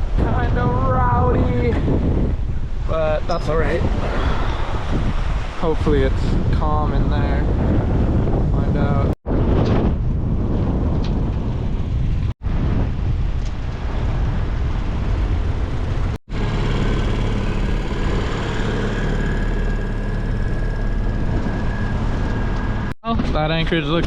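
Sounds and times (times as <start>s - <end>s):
wind on microphone: 0.0s - 24.0s
boat motor running: 15.3s - 23.3s.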